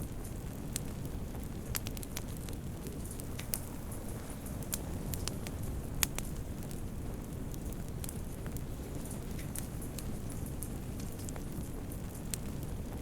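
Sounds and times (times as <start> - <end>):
fire crackling and popping: 0.0 - 13.0
fire hissing: 3.0 - 12.8.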